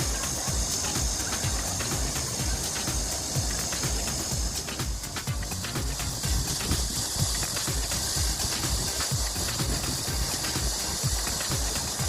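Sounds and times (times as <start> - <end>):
music with low beat: 0.0 - 12.0
stream rushing hiss: 0.0 - 12.0.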